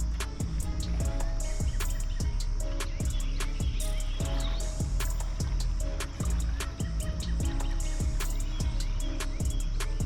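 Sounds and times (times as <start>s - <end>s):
music with quick beat and bass: 0.0s - 10.0s.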